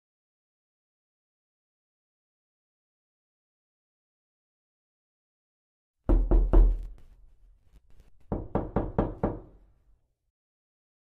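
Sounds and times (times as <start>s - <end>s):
knocking on a door: 6.1s - 7.0s, 8.3s - 9.6s.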